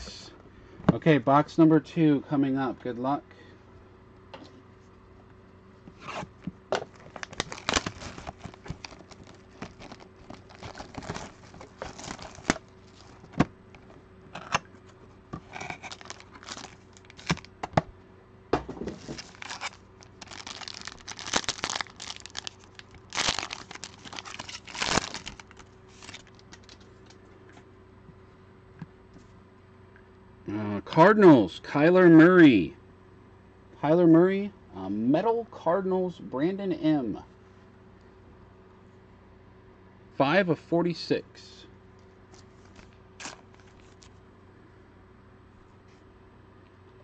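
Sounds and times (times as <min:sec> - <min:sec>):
plastic wrapping tearing and crinkling: 0:06.8 - 0:13.4, 0:15.4 - 0:17.5, 0:19.0 - 0:26.9, 0:42.4 - 0:44.2.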